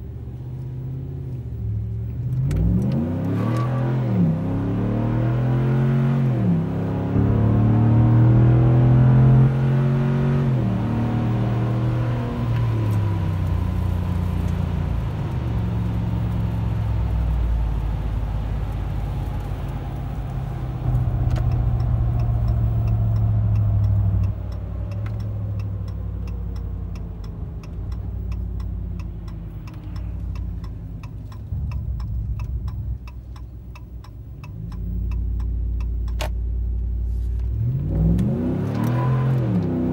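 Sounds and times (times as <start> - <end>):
engine revving while driving: 0.0 - 39.9
steady ticking: 20.8 - 36.2.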